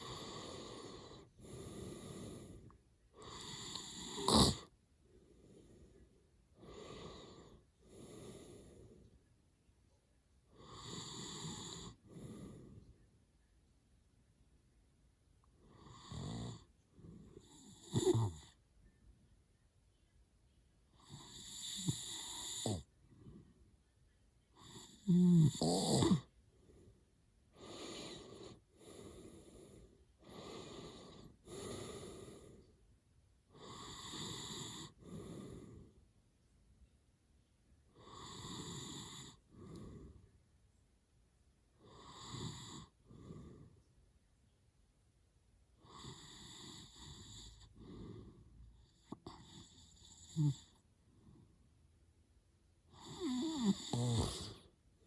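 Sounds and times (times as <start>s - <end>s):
man snoring: 3.2s - 4.7s, 17.5s - 18.5s, 21.1s - 22.9s, 24.7s - 26.3s, 49.0s - 50.8s, 53.0s - 54.7s.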